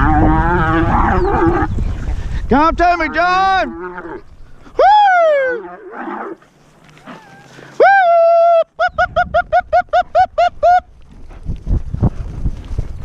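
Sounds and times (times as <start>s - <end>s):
man whooping: 4.8s - 5.6s, 7.1s - 10.9s.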